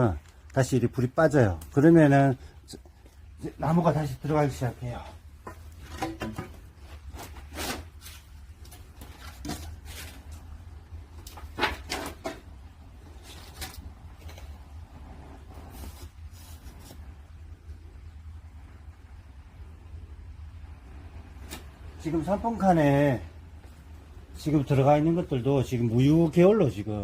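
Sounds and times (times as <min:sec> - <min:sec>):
logs cracking and knocking: 0:05.3 - 0:17.1
steady low rumble: 0:12.4 - 0:27.0.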